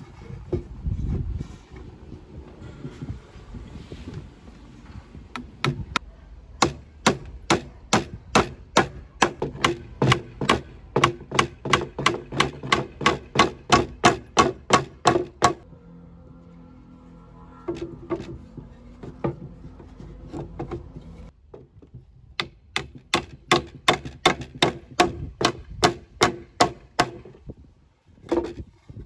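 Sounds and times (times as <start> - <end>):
hammer striking wood: 5.4 - 6.0, 6.6 - 15.6, 22.4 - 27.4.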